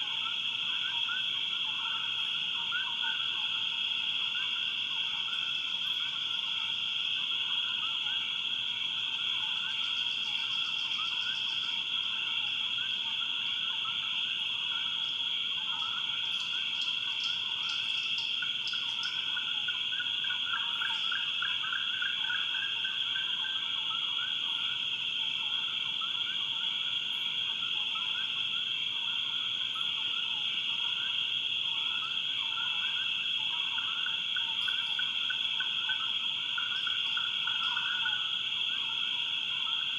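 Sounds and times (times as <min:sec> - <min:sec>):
frogs chirping: 0:00.0 - 0:39.9
high-pitched insect drone: 0:00.0 - 0:39.9
rapid insect trills: 0:00.0 - 0:39.9.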